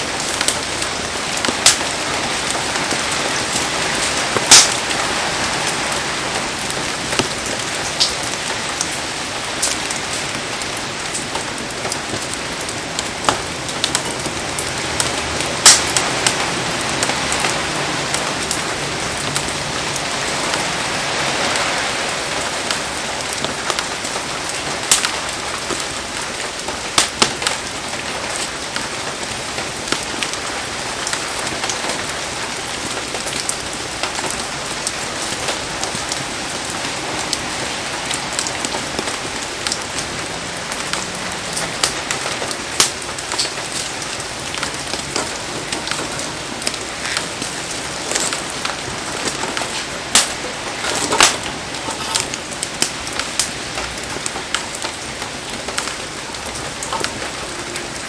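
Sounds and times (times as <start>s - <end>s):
heavy rain falling: 0.0s - 58.0s
sharp pops and clicks: 44.6s - 55.0s.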